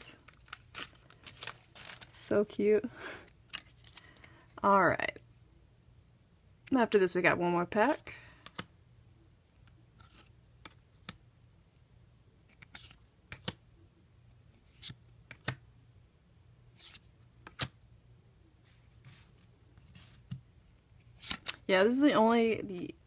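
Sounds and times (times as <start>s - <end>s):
cards clicking: 12.5s - 13.6s, 14.7s - 15.6s, 16.8s - 17.7s, 21.2s - 21.6s
card sliding against card: 16.8s - 17.7s.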